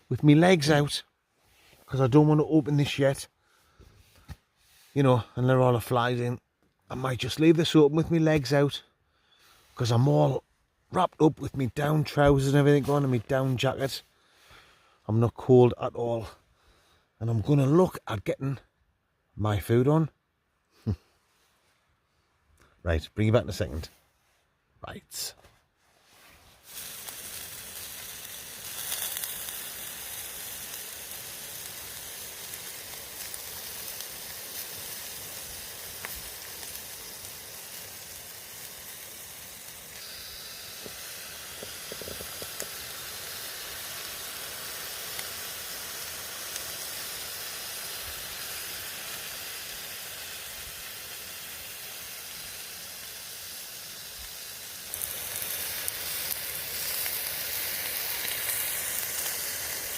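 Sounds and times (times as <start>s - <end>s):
steak sizzling in a pan: 26.6s - 59.9s.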